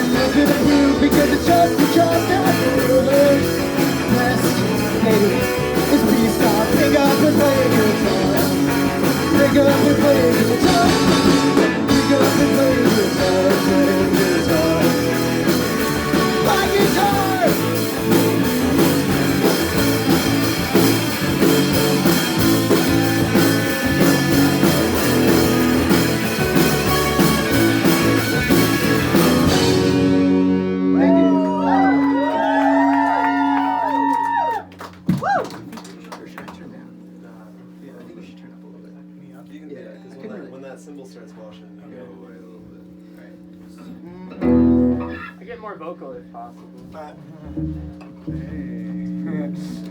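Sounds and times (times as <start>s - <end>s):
held guitar notes wavering: 0.0s - 34.6s, 44.0s - 45.5s, 47.3s - 49.9s
rock band playing: 0.0s - 34.6s, 44.3s - 45.4s, 47.4s - 49.6s.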